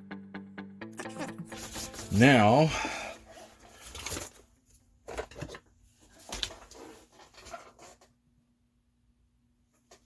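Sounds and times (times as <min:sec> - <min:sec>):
model parts knocking and rustling: 0:05.0 - 0:08.2.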